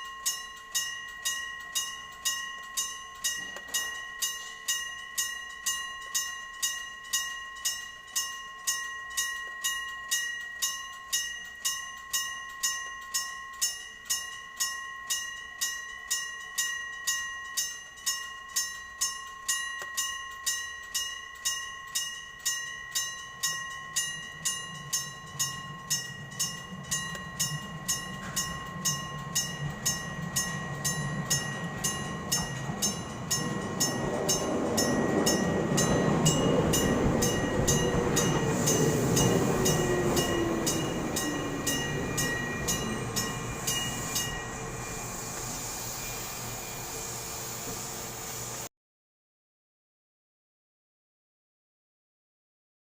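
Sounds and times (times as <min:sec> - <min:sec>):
level crossing bell ringing: 0:00.0 - 0:47.1
low rumble of approaching train: 0:00.0 - 0:48.7.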